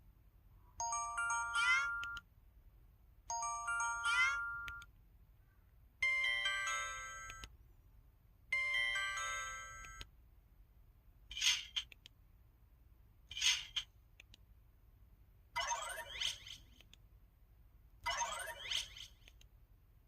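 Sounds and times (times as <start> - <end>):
tinkling electronic chime: 0.8 - 2.2, 3.3 - 4.9, 6.0 - 7.4, 8.6 - 10.0, 15.6 - 16.5, 18.1 - 19.1.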